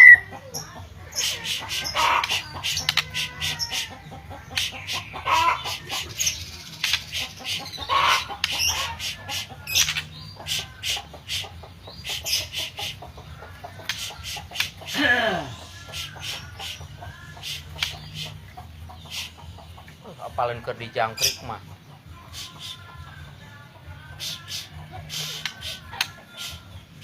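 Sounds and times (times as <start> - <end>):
bird whistled phrases: 0.0 - 0.3
bird singing clicking notes: 2.0 - 3.2, 6.4 - 7.6, 8.3 - 8.8, 9.7 - 10.2, 13.8 - 14.9, 17.5 - 18.4, 24.2 - 26.2.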